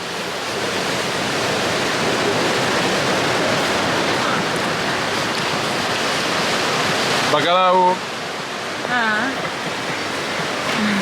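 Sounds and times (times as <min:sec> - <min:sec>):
steady rushing noise: 0:00.0 - 0:11.0.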